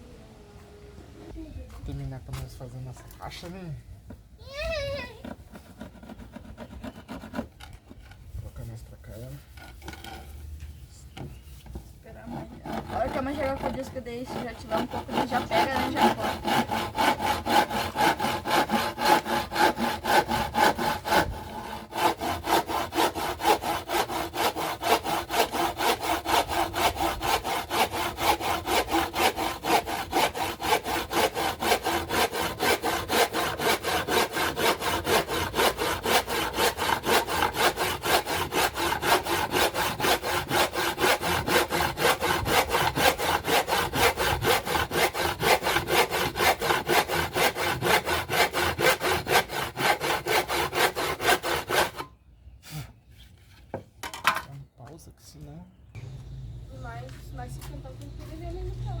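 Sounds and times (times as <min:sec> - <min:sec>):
hand saw cutting wood: 0:04.6 - 0:08.0, 0:09.5 - 0:10.4, 0:12.1 - 0:52.9.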